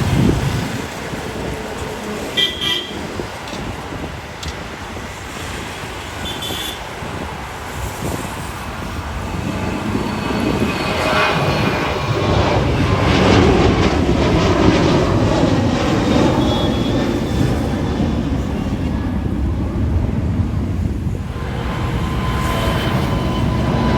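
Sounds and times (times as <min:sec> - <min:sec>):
jet engines at takeoff: 0:00.0 - 0:23.9.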